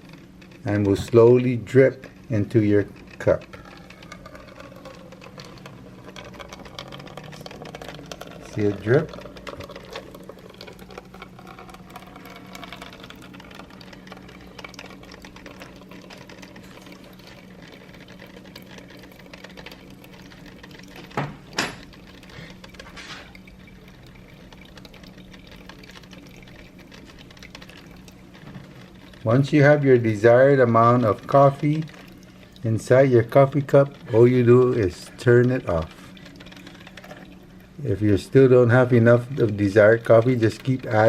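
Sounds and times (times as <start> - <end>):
coffee maker humming: 0.0 - 41.0
water dripping into a cup: 0.0 - 41.0.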